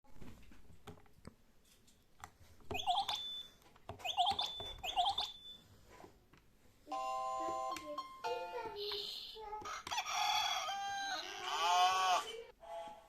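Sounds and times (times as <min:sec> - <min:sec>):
toy alarm clock chirping beeps: 0:02.7 - 0:05.7.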